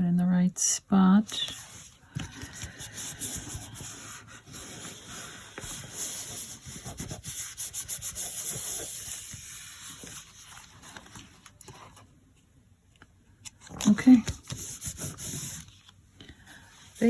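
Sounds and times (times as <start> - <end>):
paper rubbing and scuffing: 1.5 - 12.0, 13.8 - 16.0.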